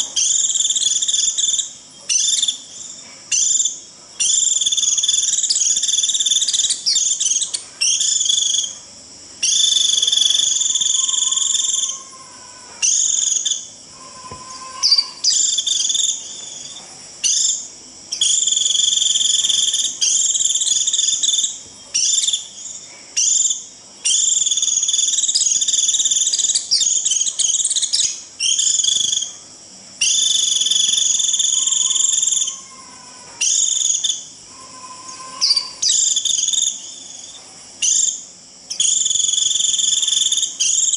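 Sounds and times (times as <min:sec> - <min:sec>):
bird buzzy shrill call: 0:09.4 - 0:17.6, 0:30.0 - 0:37.2.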